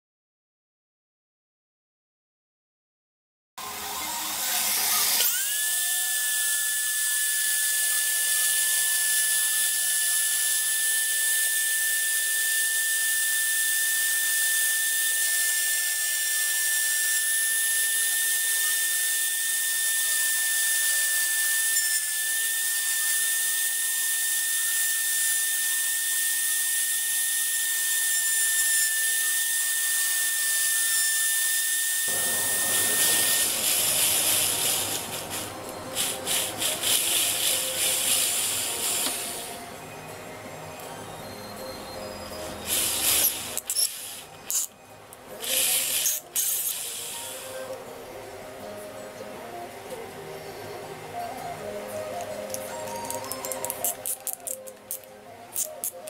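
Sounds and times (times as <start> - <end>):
lathe motor whining: 3.6 - 39.8.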